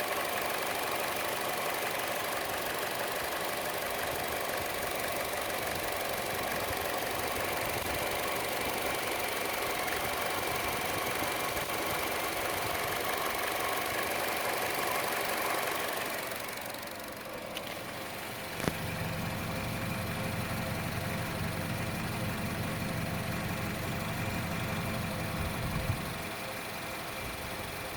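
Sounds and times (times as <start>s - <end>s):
car engine idling with ticking: 0.0s - 27.9s.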